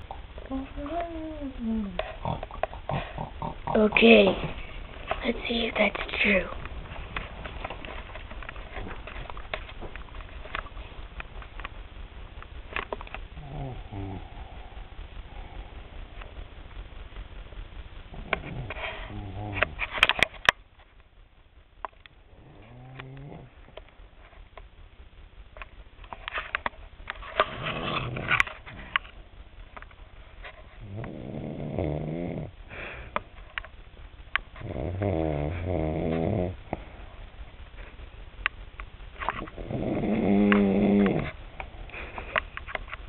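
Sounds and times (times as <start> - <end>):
woman snoring: 13.4 - 15.8, 18.2 - 19.8, 22.4 - 23.5, 30.8 - 32.9, 34.6 - 36.6, 39.5 - 41.3.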